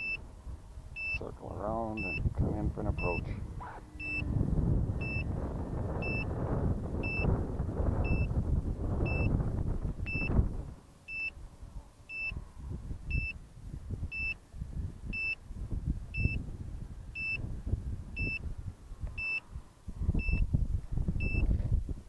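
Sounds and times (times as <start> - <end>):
high electronic beep: 0.0 - 0.2, 1.0 - 1.2, 2.0 - 2.2, 3.0 - 3.2, 4.0 - 4.3, 5.0 - 5.3, 6.0 - 6.3, 7.0 - 7.2, 9.1 - 9.3
low rushing noise: 0.0 - 10.8.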